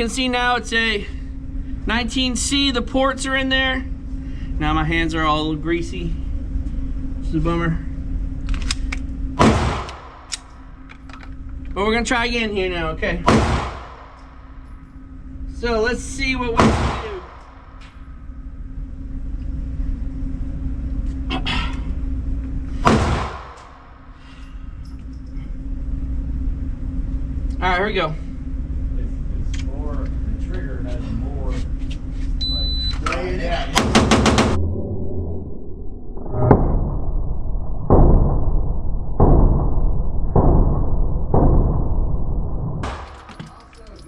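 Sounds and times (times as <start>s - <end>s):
steady low rumble: 0.0s - 32.5s, 33.4s - 44.0s
constant hum: 0.0s - 44.0s
loud sharp bang: 9.4s - 10.8s, 13.2s - 14.6s, 16.4s - 18.2s, 22.8s - 24.2s, 36.2s - 42.2s, 42.8s - 43.3s
slowed-down pistol shots: 9.4s - 10.8s, 13.3s - 14.6s, 22.8s - 24.1s, 33.8s - 34.6s, 37.8s - 43.3s.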